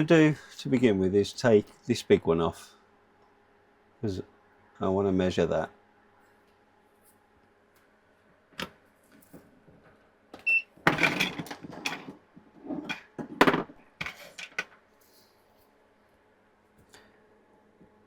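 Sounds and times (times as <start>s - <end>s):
tools clattering and scraping: 10.9s - 15.4s.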